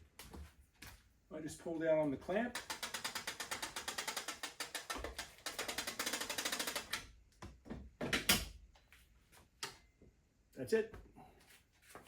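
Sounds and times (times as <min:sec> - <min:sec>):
cable reel clicking fast: 0:02.5 - 0:07.0.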